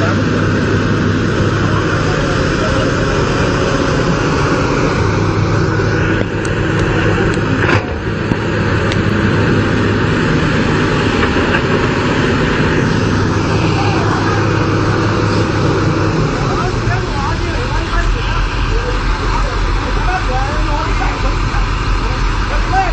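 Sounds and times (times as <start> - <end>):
excavator engine running: 0.0 - 22.9.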